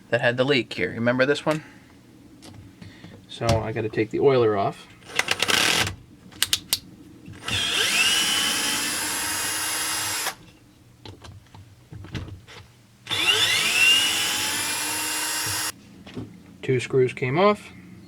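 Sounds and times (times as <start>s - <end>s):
power drill whining: 5.1s - 5.9s, 7.4s - 10.4s, 13.1s - 15.7s.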